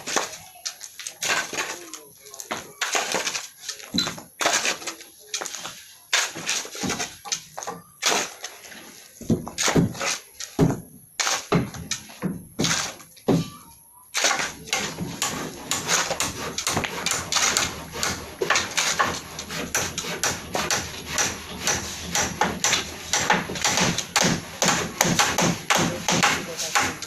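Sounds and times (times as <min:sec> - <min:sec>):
knocks and scrapes: 0:00.0 - 0:13.6, 0:14.2 - 0:27.0.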